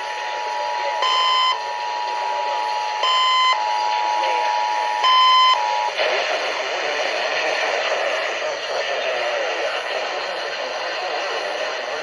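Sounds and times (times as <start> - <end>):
faint indistinct speech: 0.0 - 12.0
two-tone attention signal: 0.4 - 6.0
radio hiss: 5.7 - 12.0.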